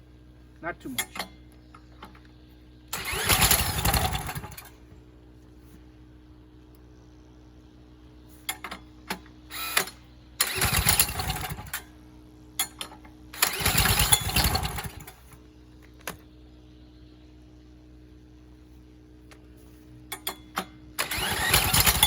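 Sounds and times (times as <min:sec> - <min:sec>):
steady low hum: 0:00.0 - 0:22.0
generator engine cranking: 0:02.9 - 0:04.8, 0:08.5 - 0:11.9, 0:12.6 - 0:15.4, 0:20.1 - 0:22.0.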